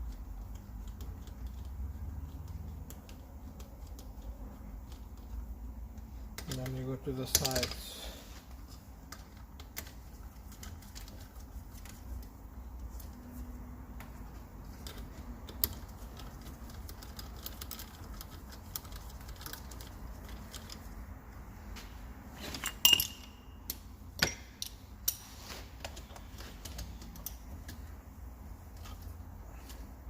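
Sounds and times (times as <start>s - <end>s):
sharp ringing metal clink: 22.6s - 23.6s.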